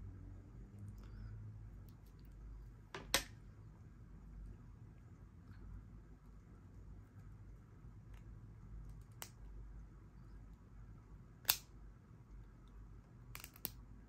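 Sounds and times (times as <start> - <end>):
low steady hum: 0.0 - 14.0
small objects clicking: 13.3 - 13.8.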